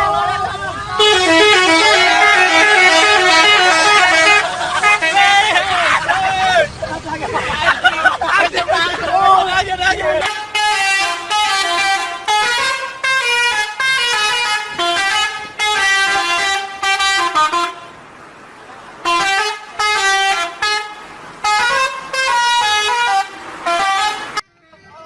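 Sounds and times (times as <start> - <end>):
musical air horn melody: 1.0 - 5.6, 10.2 - 18.0, 19.0 - 24.4.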